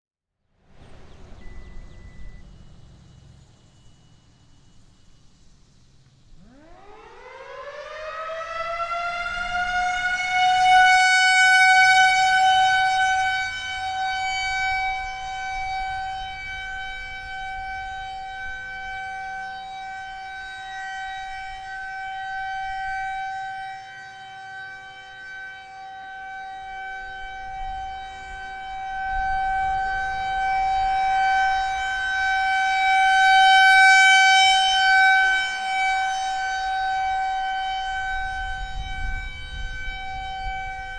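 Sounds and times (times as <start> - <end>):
loud outdoor warning siren: 0.6 - 40.9.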